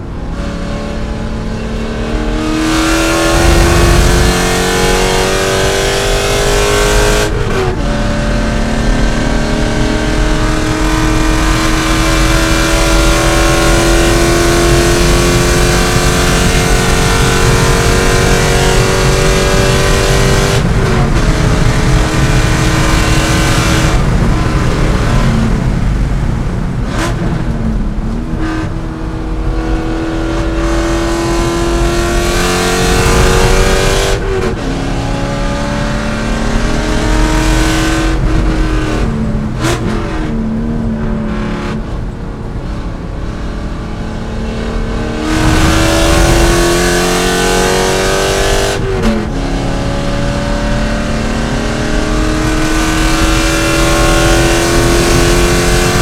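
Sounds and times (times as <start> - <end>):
race car engine accelerating: 0.0 - 56.0.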